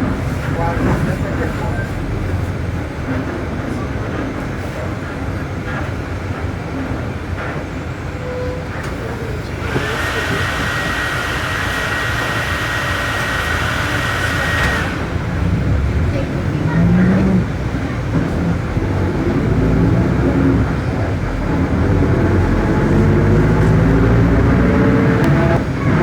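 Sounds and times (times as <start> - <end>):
bus diesel engine rumble: 0.0 - 26.0
high differential whine: 22.2 - 26.0.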